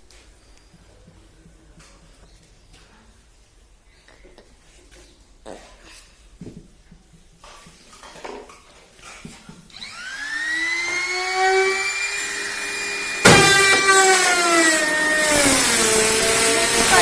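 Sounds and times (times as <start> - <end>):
power tool motor whining: 9.7 - 17.0.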